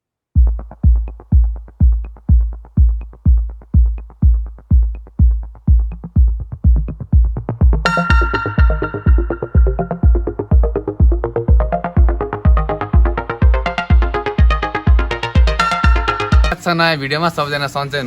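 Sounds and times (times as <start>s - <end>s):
heavy kick drum: 0.4s - 16.6s
electronic dance music: 0.4s - 17.2s
synth chord: 7.8s - 16.6s.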